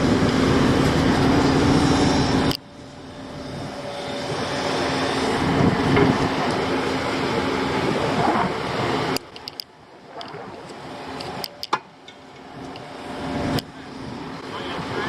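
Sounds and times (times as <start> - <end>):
heavy vehicle engine running: 0.0 - 15.0
sharp clicks and knocks: 9.2 - 10.4, 11.2 - 12.9.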